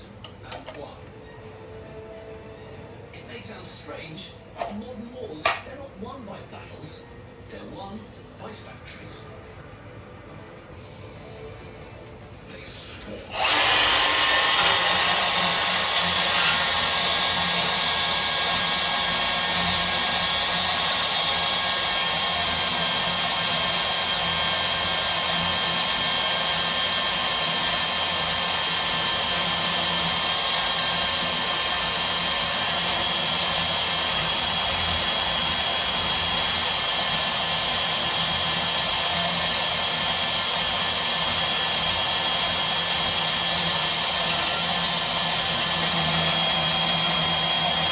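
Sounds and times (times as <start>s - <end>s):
bandsaw motor whine: 13.3s - 47.9s.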